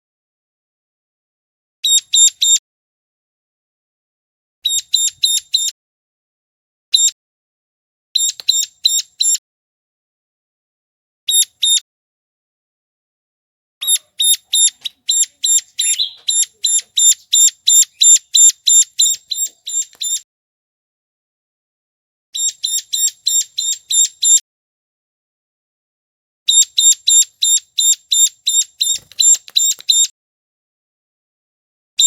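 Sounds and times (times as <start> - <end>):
bird calling high-pitched notes: 4.6 - 5.7, 8.2 - 9.4, 13.8 - 20.2, 22.4 - 24.4, 26.5 - 30.1.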